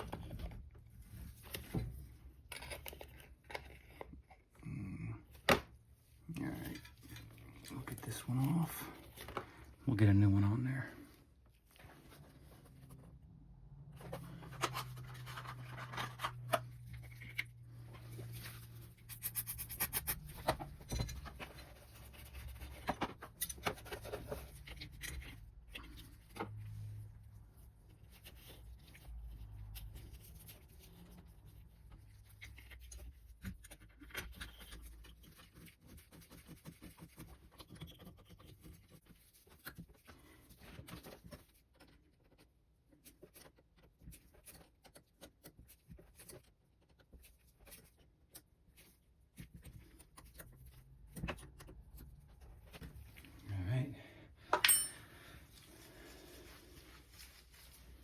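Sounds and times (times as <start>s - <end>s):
metal parts being handled: 18.1s - 26.3s, 54.5s - 55.2s.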